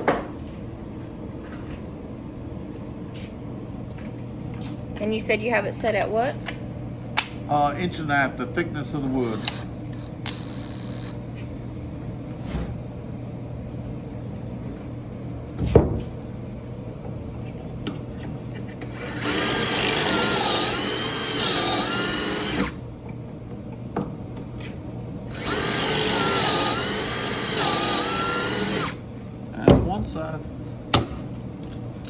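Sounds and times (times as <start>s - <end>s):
power drill whining: 9.4s - 11.2s, 18.9s - 22.8s, 25.3s - 29.0s.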